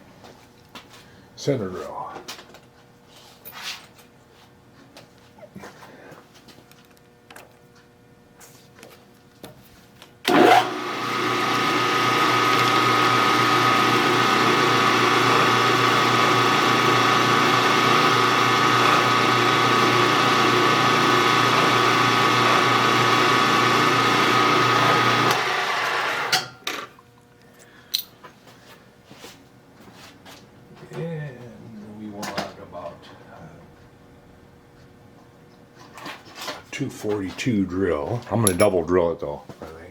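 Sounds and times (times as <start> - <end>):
milling machine spindle whine: 10.3 - 26.4.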